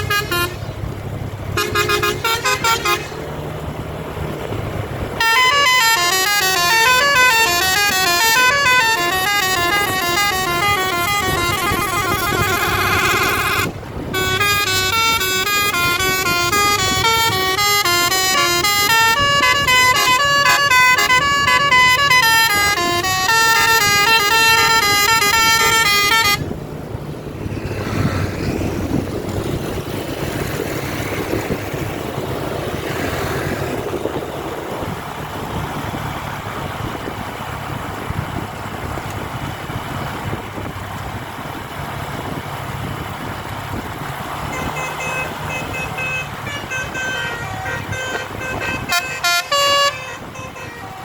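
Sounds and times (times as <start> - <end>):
bus horn playing a tune: 0.0 - 0.8, 1.4 - 3.4, 5.2 - 26.6, 44.4 - 51.0.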